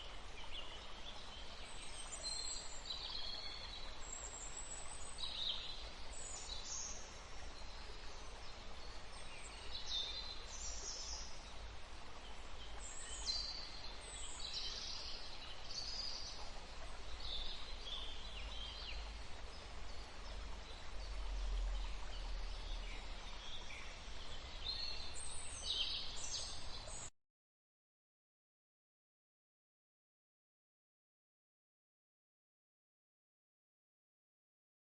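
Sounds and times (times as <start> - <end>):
outdoor background hiss: 0.0 - 27.1.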